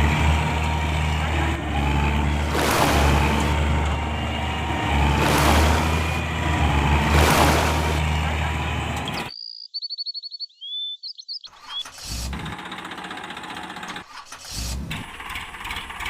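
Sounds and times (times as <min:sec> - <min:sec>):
heavy engine rumbling: 0:00.0 - 0:09.3, 0:11.8 - 0:16.0
high bird chirps: 0:09.1 - 0:11.9.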